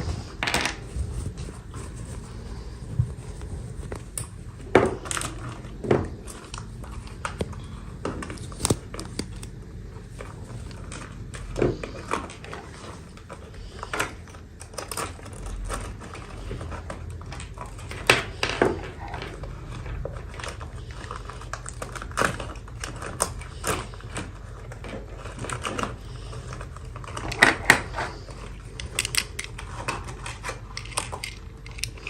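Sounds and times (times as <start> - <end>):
plastic packaging crinkling: 0.2 - 32.0
plastic pieces clicking and tapping: 28.8 - 32.0.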